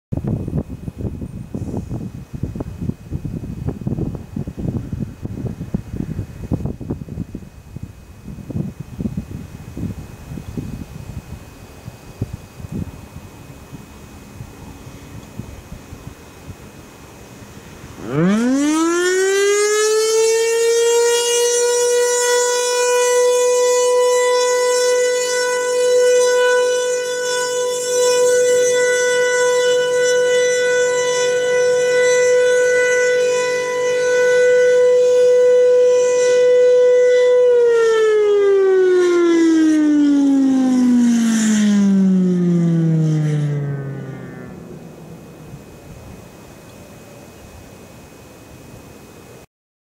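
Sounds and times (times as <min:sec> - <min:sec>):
outdoor warning siren: 0:11.8 - 0:46.8.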